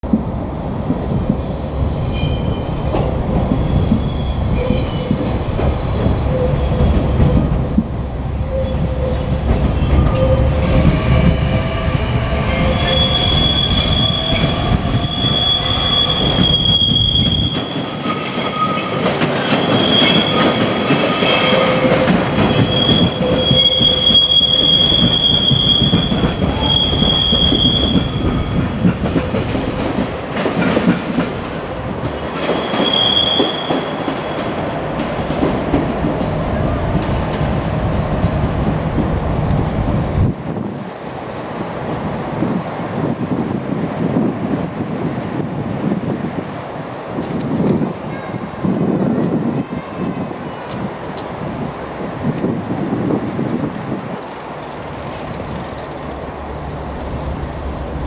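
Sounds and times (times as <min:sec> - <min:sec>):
train wheels squealing on rails: 0:01.2 - 0:07.8, 0:08.4 - 0:38.5
wheels rumbling on track: 0:21.8 - 0:40.6, 0:41.7 - 0:58.0.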